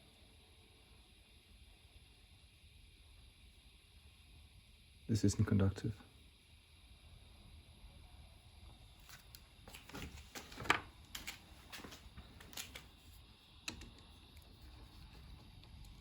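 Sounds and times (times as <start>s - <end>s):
hands handling cable strands: 9.0s - 13.0s.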